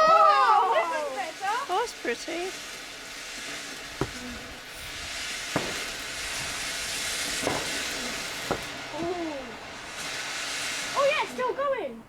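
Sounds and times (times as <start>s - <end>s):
firework hissing: 0.0s - 12.0s
sharp firework pops: 2.4s - 11.0s.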